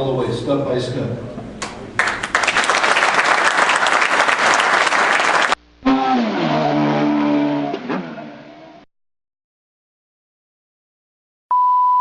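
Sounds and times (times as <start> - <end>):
audience applauding: 2.0 - 5.6.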